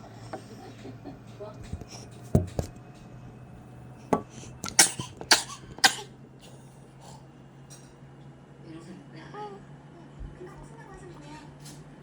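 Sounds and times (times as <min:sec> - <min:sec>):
baby sneezing: 0:04.6 - 0:06.1.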